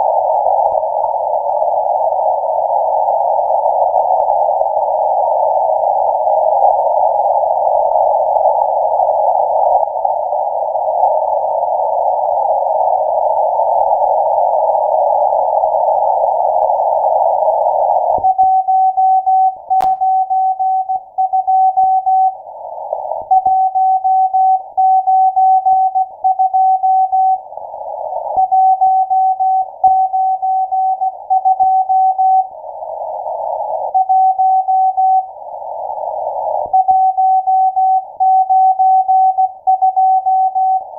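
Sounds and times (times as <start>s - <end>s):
morse code beeps: 36.8s - 40.9s.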